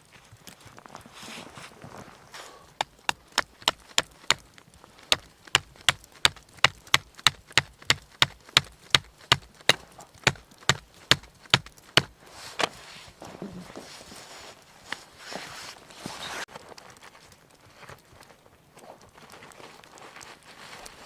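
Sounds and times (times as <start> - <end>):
chopping strikes on wood: 2.8 - 4.4, 5.1 - 12.1.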